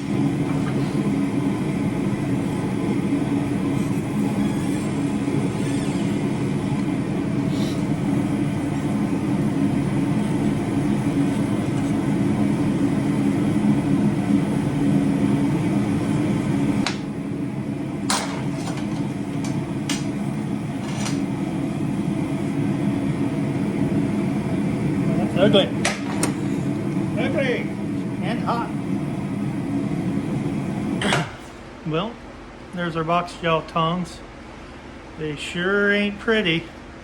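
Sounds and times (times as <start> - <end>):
constant low hum: 0.0 - 37.0.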